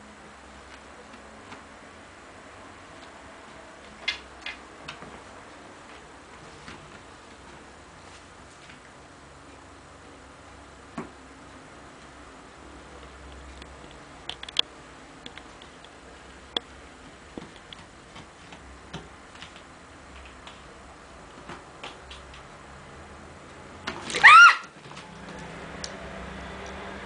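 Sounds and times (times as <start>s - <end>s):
mouse squeal: 24.1s - 24.7s.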